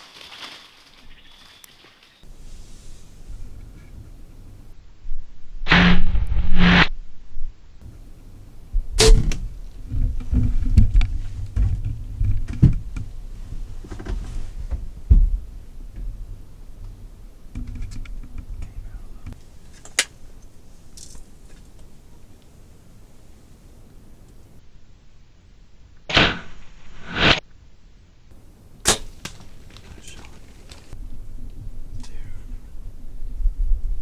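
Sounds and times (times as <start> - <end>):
rustling and thumps: 7.8 - 24.6, 28.3 - 33.8
bowstring snap: 28.8 - 29.5.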